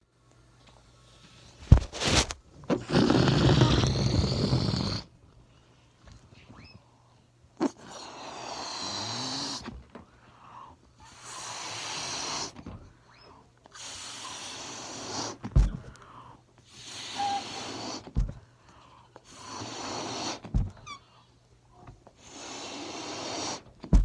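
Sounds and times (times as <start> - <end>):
balloon air hissing: 1.7 - 5.1, 8.0 - 9.7, 11.0 - 12.6, 13.7 - 15.5, 16.7 - 18.2, 19.3 - 20.5, 22.2 - 23.8.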